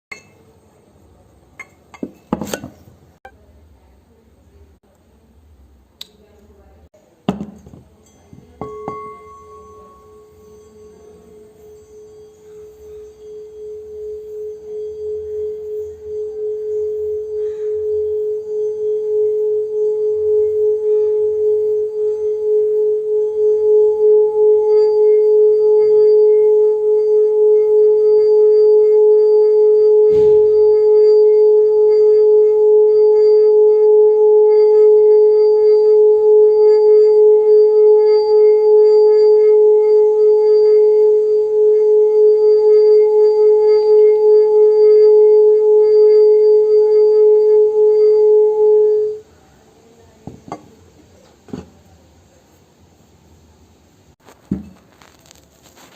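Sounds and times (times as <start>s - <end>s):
singing bowl ringing low tone: 7.9s - 49.3s.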